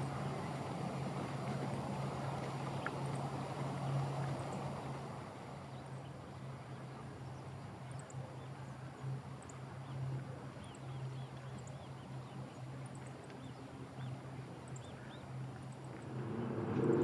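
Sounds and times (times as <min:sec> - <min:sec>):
outdoor background noise: 0:00.0 - 0:17.0
steady low hum: 0:14.4 - 0:17.0.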